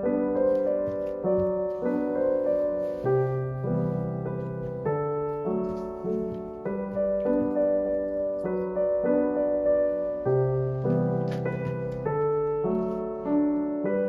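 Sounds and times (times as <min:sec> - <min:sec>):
gentle solo piano piece: 0:00.0 - 0:14.0.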